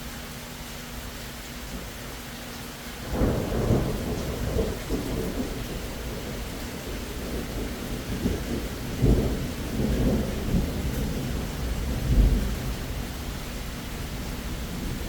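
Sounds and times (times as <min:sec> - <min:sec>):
steady rain: 0:00.0 - 0:15.0
thunder rumbling: 0:03.0 - 0:15.0.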